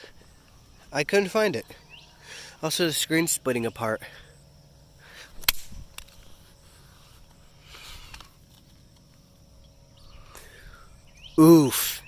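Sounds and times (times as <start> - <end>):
phone pieces clicking: 8.0 - 9.2.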